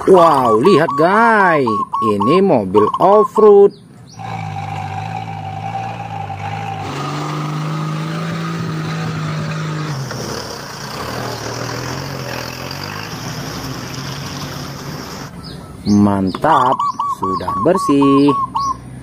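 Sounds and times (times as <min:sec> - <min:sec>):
vehicle engine running: 0:03.7 - 0:16.5.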